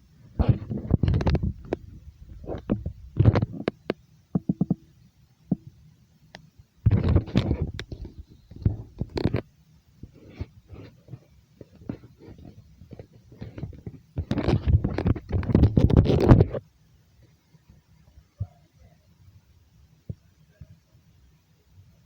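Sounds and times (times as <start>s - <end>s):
objects rustling and knocking: 0.4s - 4.9s, 6.9s - 9.4s, 10.0s - 16.6s.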